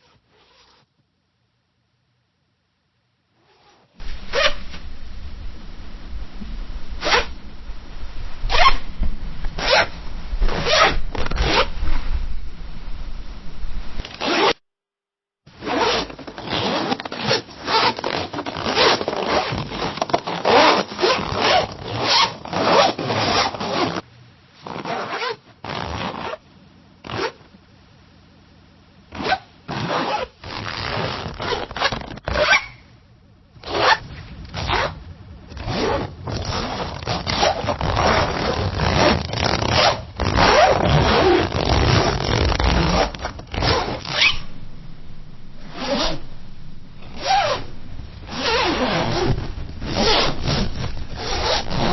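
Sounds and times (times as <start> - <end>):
zipper zipping up and down: 0.0 - 0.9, 3.4 - 4.9, 7.0 - 7.4, 8.5 - 8.8, 9.6 - 12.0, 14.0 - 14.6, 15.6 - 24.0, 24.6 - 26.4, 27.0 - 27.4, 29.1 - 32.8, 33.6 - 44.5, 45.6 - 46.3, 47.0 - 47.7, 48.3 - 51.9.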